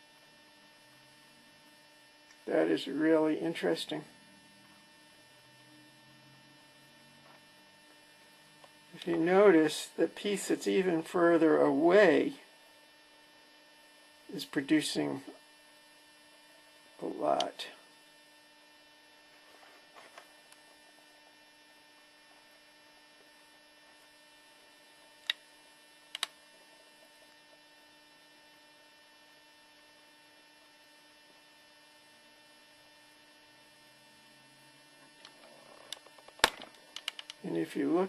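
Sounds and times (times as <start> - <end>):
electrical mains hum: 0.0 - 38.0
faint clicks: 37.0 - 37.4.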